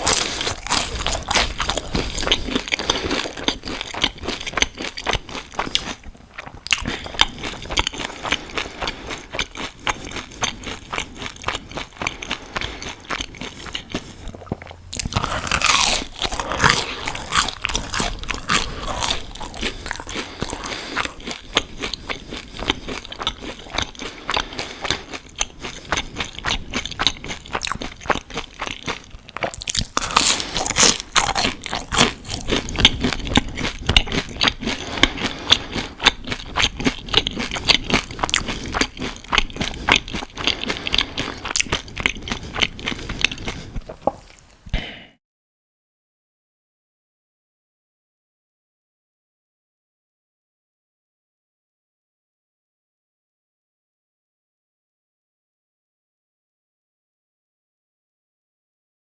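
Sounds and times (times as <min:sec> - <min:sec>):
crunching and chewing onion rings: 0:00.0 - 0:44.8.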